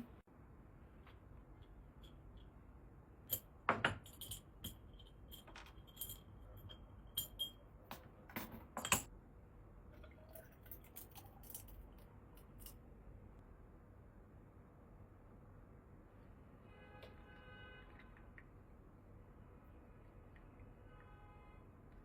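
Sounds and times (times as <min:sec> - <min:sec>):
tableware clinking: 0:08.3 - 0:09.1.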